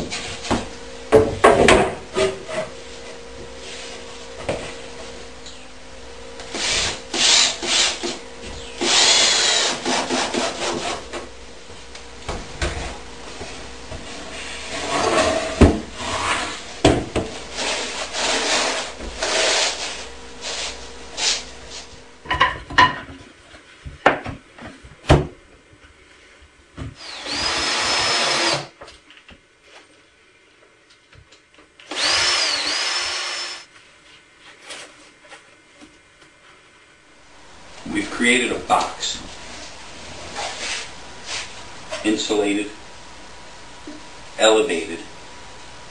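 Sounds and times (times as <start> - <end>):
power drill whining: 8.8 - 9.9, 27.0 - 28.7, 31.9 - 33.7.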